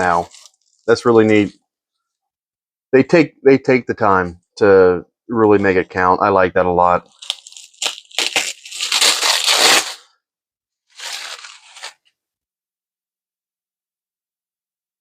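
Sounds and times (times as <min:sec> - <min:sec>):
packaging crinkling and tearing: 0:00.0 - 0:01.4, 0:07.1 - 0:10.1, 0:10.9 - 0:12.0.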